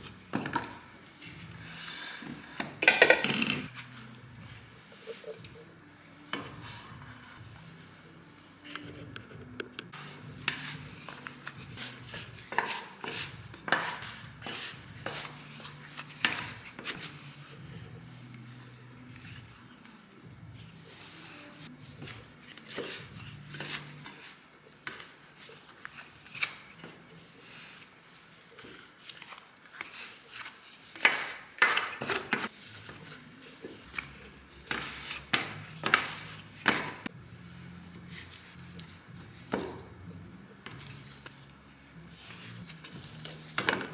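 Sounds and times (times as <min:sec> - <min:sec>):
kitchen utensils knocking and scraping: 0:02.4 - 0:03.7.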